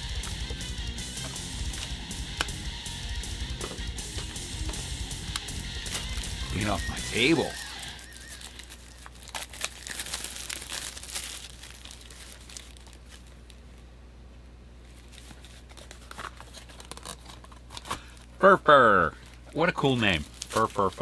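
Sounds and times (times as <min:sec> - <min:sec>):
low steady hum: 0:00.0 - 0:09.3
packaging crinkling and rustling: 0:08.0 - 0:13.9, 0:14.8 - 0:18.4, 0:19.2 - 0:21.0.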